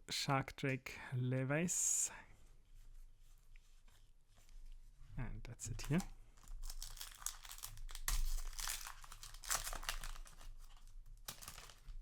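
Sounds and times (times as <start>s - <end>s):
foil wrapper crinkling and tearing: 5.8s - 12.0s.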